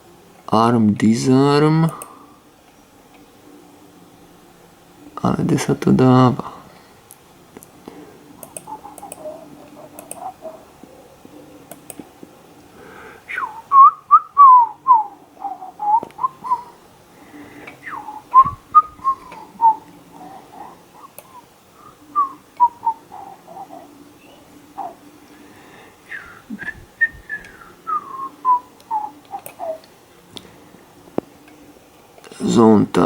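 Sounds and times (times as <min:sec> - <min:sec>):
faint steady hum: 0:00.0 - 0:33.0
faint clicks: 0:01.8 - 0:03.3, 0:06.7 - 0:12.7, 0:21.0 - 0:21.4, 0:28.8 - 0:32.4
person whistling a tune: 0:13.3 - 0:15.1, 0:17.8 - 0:19.8, 0:26.1 - 0:29.0.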